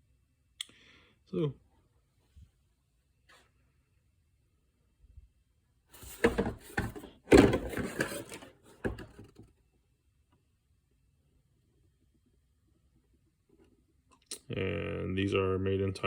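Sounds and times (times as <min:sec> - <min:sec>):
plastic case knocks and clatter: 0:06.0 - 0:09.5.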